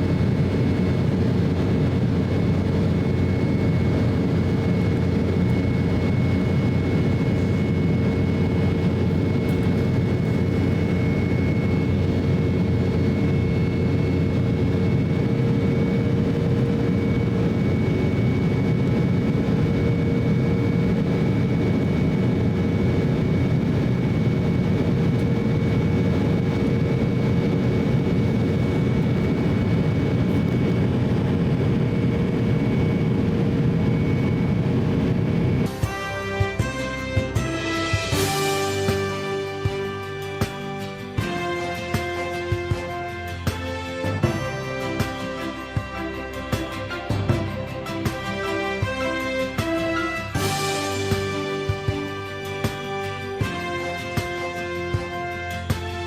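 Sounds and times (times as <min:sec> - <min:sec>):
faint steady whine: 0:00.0 - 0:36.0
engine and airflow rumble in cabin: 0:00.0 - 0:40.5.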